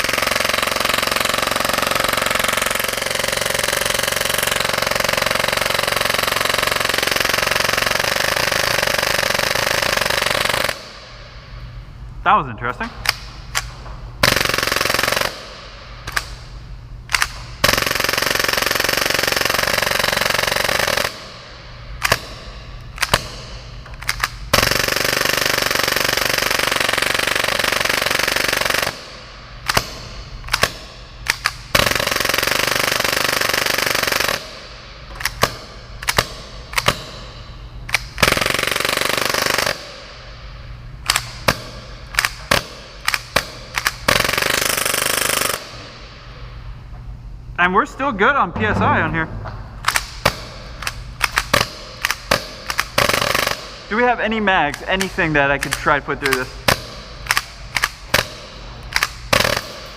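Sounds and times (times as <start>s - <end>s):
airsoft pistol firing bursts: 0.0s - 11.0s, 14.2s - 16.2s, 17.1s - 21.4s, 24.0s - 29.9s, 30.5s - 37.1s, 37.9s - 40.1s, 51.2s - 53.9s, 54.8s - 59.9s.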